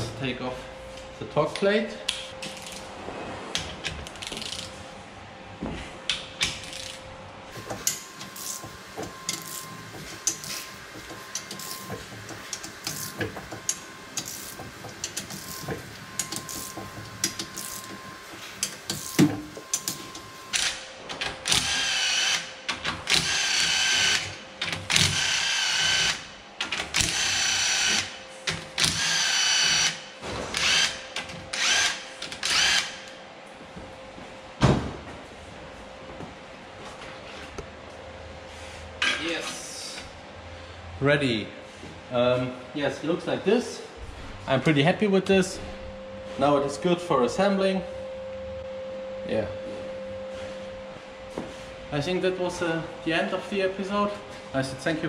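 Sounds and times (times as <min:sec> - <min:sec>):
cordless power tool whirring: 0:21.5 - 0:22.5, 0:23.1 - 0:26.2, 0:28.8 - 0:33.1.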